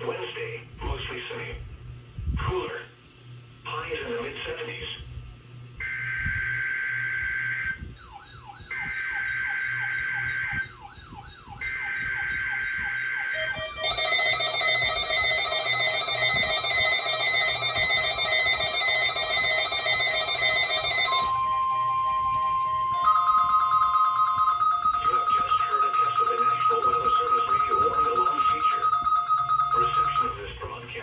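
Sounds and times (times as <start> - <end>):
alert radio alarm tones and beeps: 5.8 - 30.8
steady warning alarm tone: 5.8 - 31.0
warbling sweeping alert sirens: 5.8 - 31.0
screeching digital data bursts: 23.0 - 30.5.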